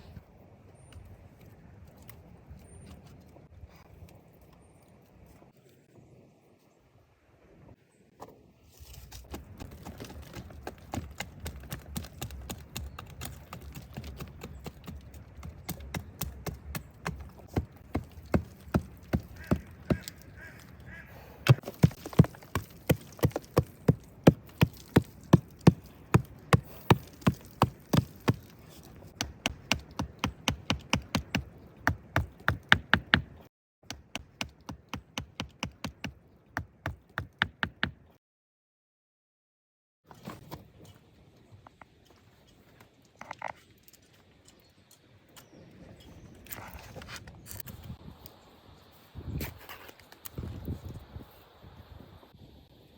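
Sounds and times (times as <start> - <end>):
tool chopping wood: 9.3 - 20.2, 21.4 - 28.5, 29.2 - 33.3.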